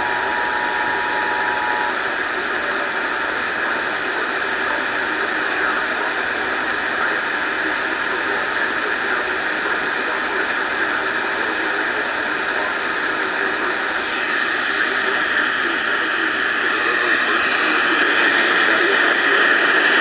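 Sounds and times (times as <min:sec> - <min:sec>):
radio static hiss: 0:00.0 - 0:20.0.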